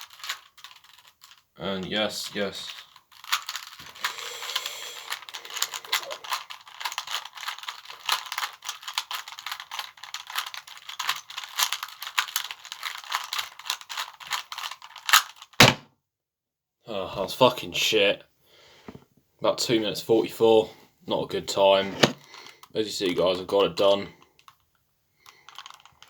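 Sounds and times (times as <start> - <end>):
plastic puzzle cube clicking: 5.1 - 15.8, 25.4 - 26.0.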